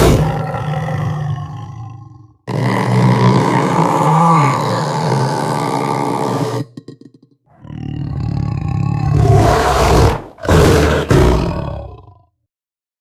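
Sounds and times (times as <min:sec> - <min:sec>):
big cat growling and roaring: 0:00.0 - 0:12.3.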